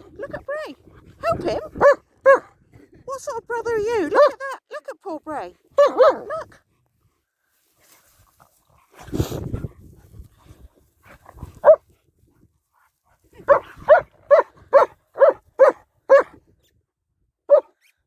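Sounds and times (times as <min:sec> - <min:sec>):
dog barking: 0:01.8 - 0:02.5, 0:04.1 - 0:04.4, 0:05.8 - 0:06.5, 0:11.6 - 0:11.8, 0:13.5 - 0:16.4, 0:17.5 - 0:17.8
low rumble on microphone: 0:08.8 - 0:14.8.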